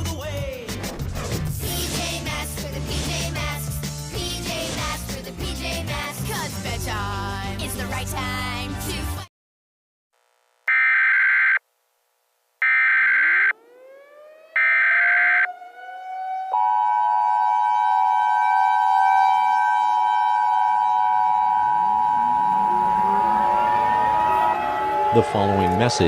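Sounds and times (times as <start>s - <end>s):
siren wailing: 10.7s - 11.6s, 12.6s - 26.0s
two-tone attention signal: 20.8s - 25.0s.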